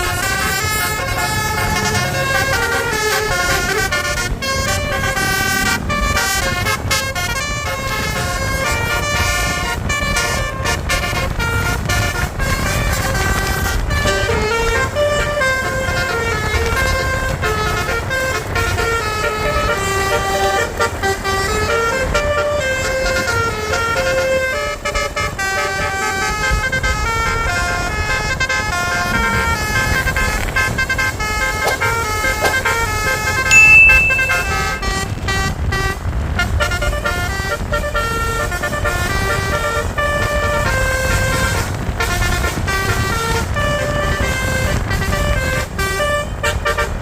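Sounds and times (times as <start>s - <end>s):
bus engine rumble: 0.0s - 33.6s, 34.8s - 47.0s
multi-tone bus air horn tune: 0.0s - 33.6s, 34.5s - 47.0s
high piercing tone: 33.5s - 35.1s.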